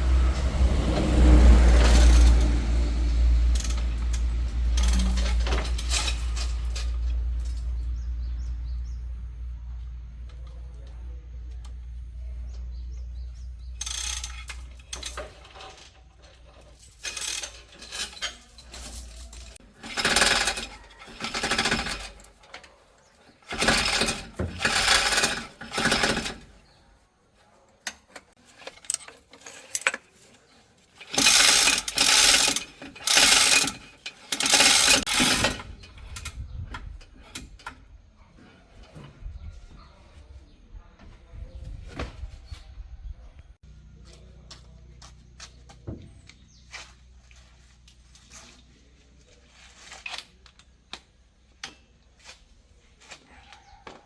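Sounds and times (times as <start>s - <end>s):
pneumatic impact wrench bursts: 31.0s - 36.3s.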